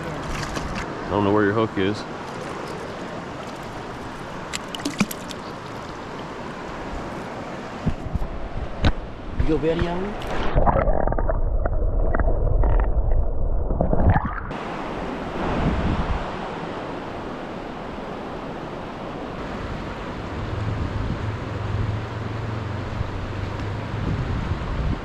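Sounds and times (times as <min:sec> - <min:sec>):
river water rushing: 0:00.0 - 0:09.4, 0:14.5 - 0:24.5
muffled low rumble: 0:10.1 - 0:14.5.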